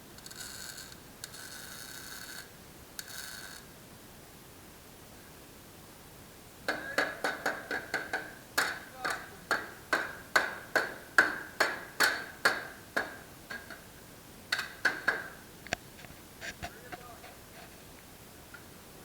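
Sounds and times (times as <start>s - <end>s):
hammer blows on metal: 6.7s - 13.8s.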